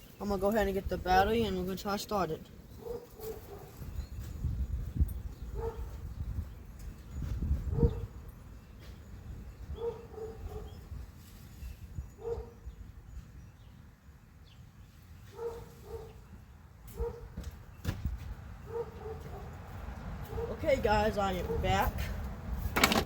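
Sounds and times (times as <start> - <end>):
dog barking: 2.8 - 3.8, 5.6 - 5.9, 7.7 - 8.1, 9.8 - 10.8, 12.2 - 12.6, 15.3 - 16.2, 16.9 - 17.4, 18.7 - 19.6, 20.2 - 20.6.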